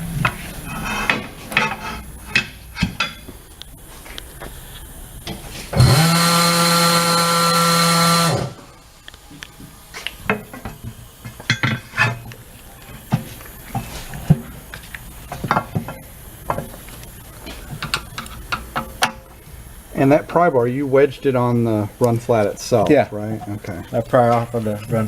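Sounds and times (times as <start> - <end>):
power tool running: 5.2 - 11.4.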